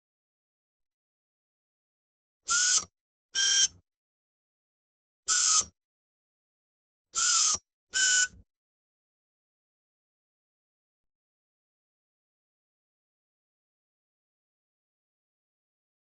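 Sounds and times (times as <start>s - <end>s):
electric screwdriver motor whirring: 5.3s - 5.6s, 7.2s - 8.3s.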